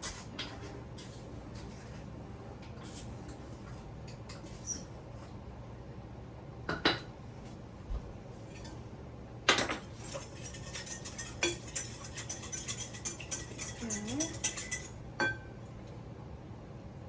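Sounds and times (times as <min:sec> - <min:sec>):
dishes clinking and scraping: 0:00.0 - 0:02.0, 0:09.5 - 0:15.5.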